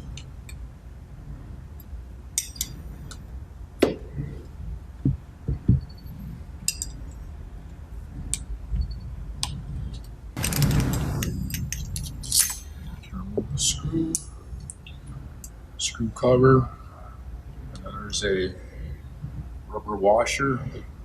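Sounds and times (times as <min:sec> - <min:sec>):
steel tools clinking and knocking: 0:02.4 - 0:03.2, 0:06.6 - 0:07.2.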